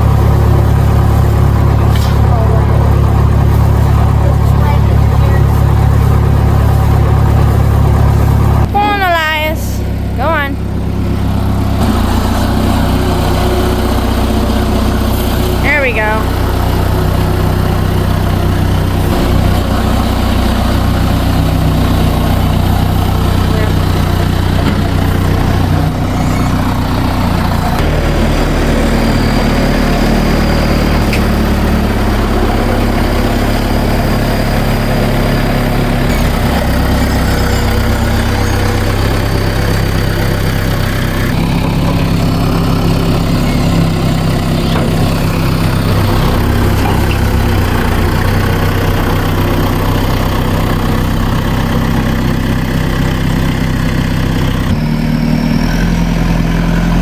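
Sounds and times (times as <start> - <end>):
loader bucket scraping: 0.0 - 54.8
tractor engine running: 0.0 - 57.0.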